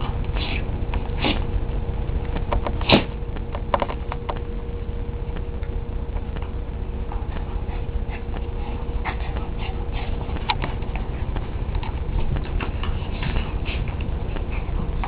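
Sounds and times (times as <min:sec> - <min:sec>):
low rumble with faint hum: 0:00.0 - 0:15.0.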